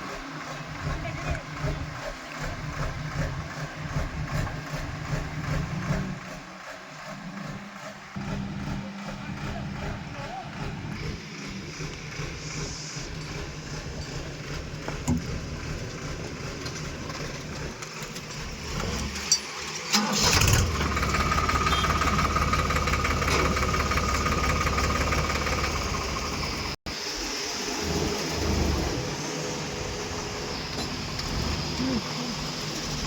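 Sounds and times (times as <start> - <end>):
steady engine whine: 0.0 - 19.2
heavy diesel engine running: 0.0 - 33.0.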